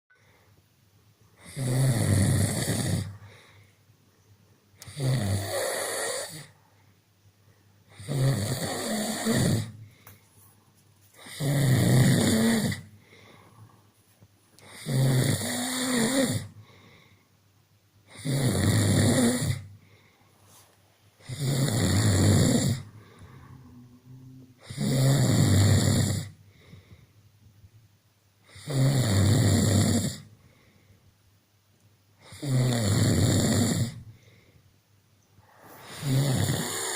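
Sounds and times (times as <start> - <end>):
quiet breathing: 0.1 - 1.5, 2.5 - 11.8, 12.6 - 14.9, 16.4 - 17.5, 19.6 - 21.7, 22.3 - 24.8, 26.2 - 27.3, 30.2 - 31.2, 33.9 - 36.9
man snoring: 1.4 - 3.4, 4.8 - 6.6, 7.9 - 9.8, 11.2 - 12.9, 14.6 - 16.5, 18.1 - 19.7, 21.2 - 26.4, 28.5 - 30.3, 32.2 - 34.0, 35.4 - 36.9.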